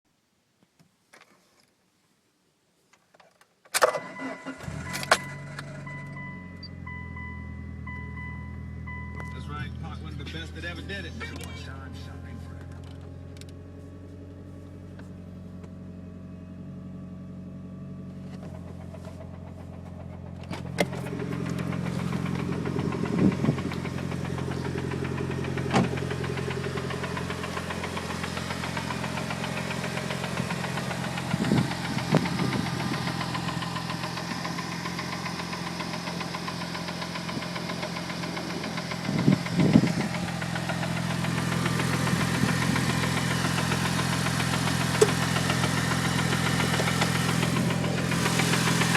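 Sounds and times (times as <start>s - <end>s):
car engine idling with knocking: 18.0s - 48.9s.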